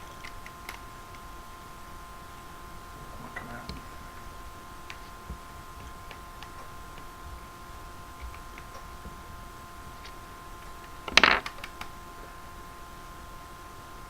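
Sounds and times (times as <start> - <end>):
faint clicks of small parts: 0.0 - 1.3, 10.0 - 12.0.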